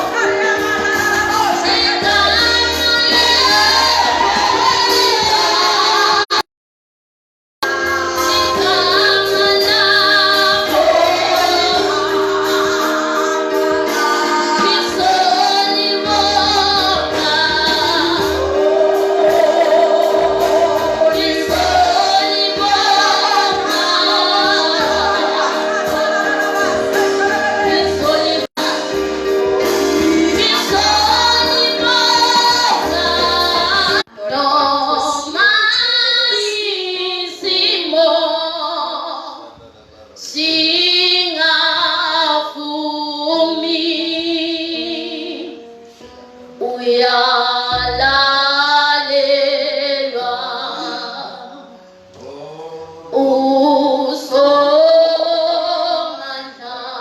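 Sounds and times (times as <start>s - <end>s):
women singing gospel: 0.0s - 6.4s, 7.6s - 39.6s, 46.6s - 57.0s
held instrumental chords: 7.6s - 35.6s.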